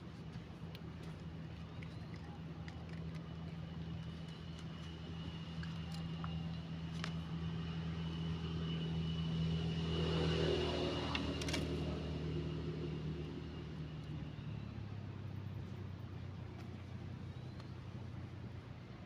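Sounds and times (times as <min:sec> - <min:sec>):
motor engine passing: 0:03.8 - 0:15.5.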